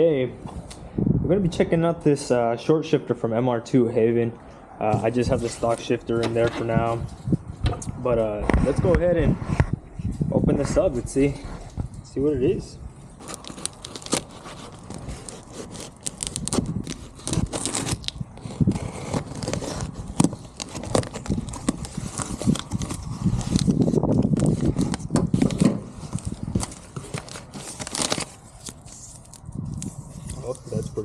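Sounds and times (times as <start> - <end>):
packaging tearing and rustling: 13.2 - 30.6.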